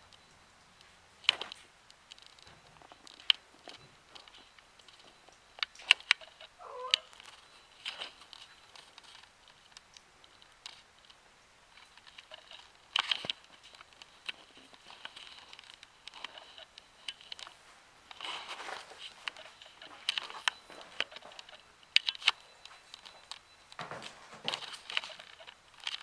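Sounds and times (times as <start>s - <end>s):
cat meowing: 6.6s - 7.2s.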